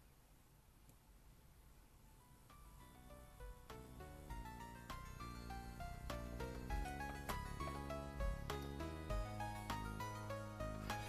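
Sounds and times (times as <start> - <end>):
background music with low bass: 2.2 - 11.0.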